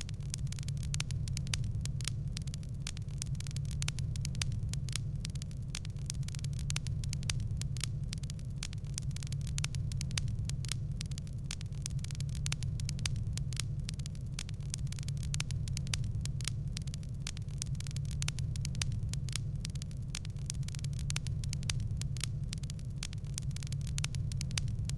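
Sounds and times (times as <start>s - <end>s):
wood fire crackling: 0.0s - 24.9s.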